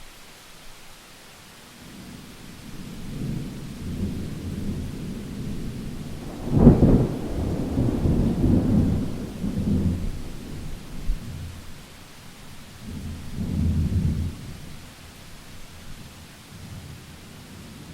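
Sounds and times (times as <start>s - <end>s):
faint rain hiss: 0.0s - 17.9s
thunder rumbling and cracking: 3.0s - 11.8s.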